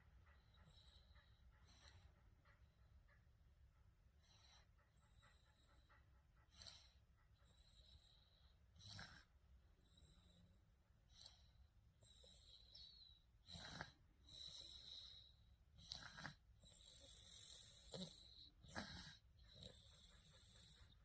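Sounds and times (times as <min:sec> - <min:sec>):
baby snoring: 0:15.9 - 0:20.6.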